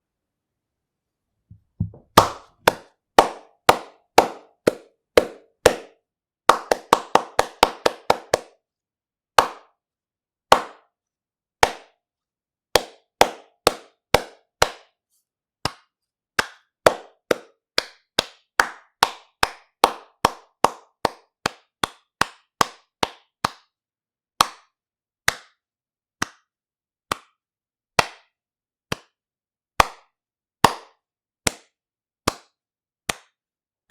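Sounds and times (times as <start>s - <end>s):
hands clapping: 1.8s - 8.6s, 9.4s - 9.8s, 10.5s - 10.9s, 11.6s - 12.0s, 12.8s - 15.0s, 15.6s - 23.8s, 24.4s - 25.6s, 26.2s - 26.5s, 27.1s - 27.4s, 28.0s - 29.2s, 29.8s - 33.4s.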